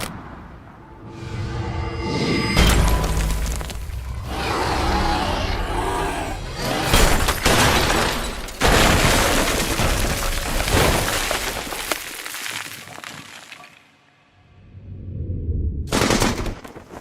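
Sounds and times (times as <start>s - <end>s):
crash with shattering debris: 6.8s - 13.8s.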